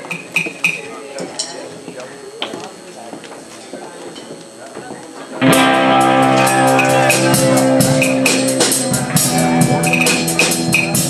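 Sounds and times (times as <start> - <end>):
rock band playing live: 5.4 - 11.0.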